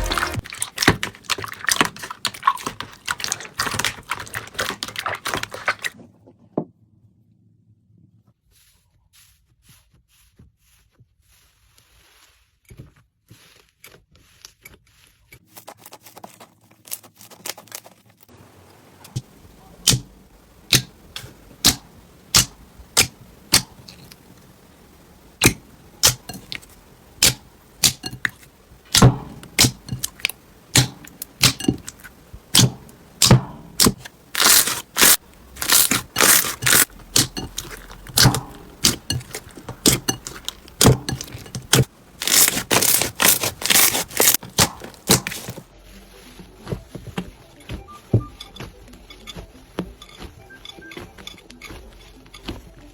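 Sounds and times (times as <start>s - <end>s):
slime popping and crackling: 0.0s - 6.0s, 19.1s - 45.6s.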